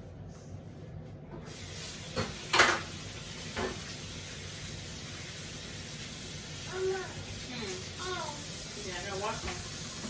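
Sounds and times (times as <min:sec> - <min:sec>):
tap water running into sink: 0:01.5 - 0:10.0
dishes knocking against sink: 0:02.2 - 0:02.9.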